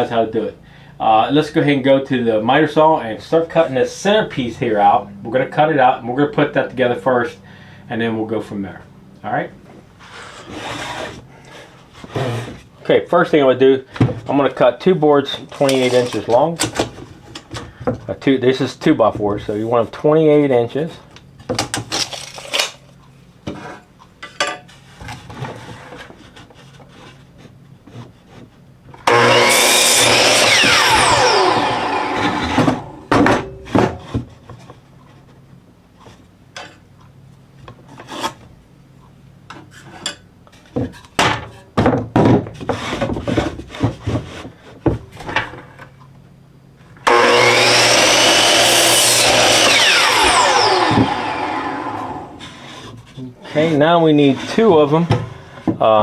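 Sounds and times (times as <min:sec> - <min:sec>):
miter saw cutting wood: 0:29.0 - 0:33.1, 0:47.0 - 0:52.7.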